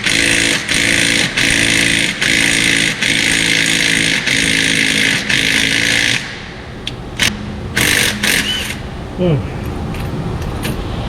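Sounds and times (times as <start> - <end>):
impact wrench: 0.0 - 6.6, 7.2 - 8.9.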